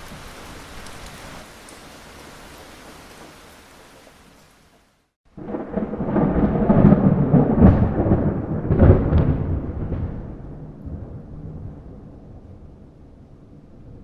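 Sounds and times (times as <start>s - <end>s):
soft rain hiss: 0.0s - 6.3s
thunder clap and rumble: 5.3s - 14.0s.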